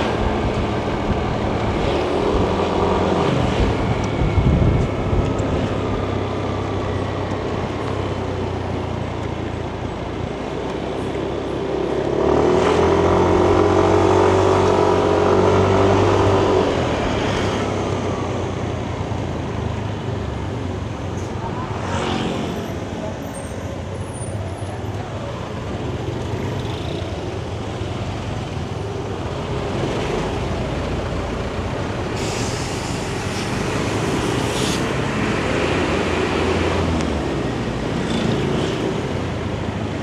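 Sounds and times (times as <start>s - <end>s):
road and traffic noise: 0.0s - 40.0s.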